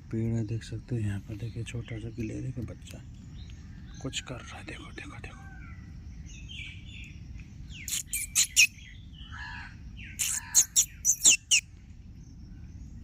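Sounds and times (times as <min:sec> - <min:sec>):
soft bird chirps: 0:00.4 - 0:13.0
loud sharp bird calls: 0:03.2 - 0:11.8.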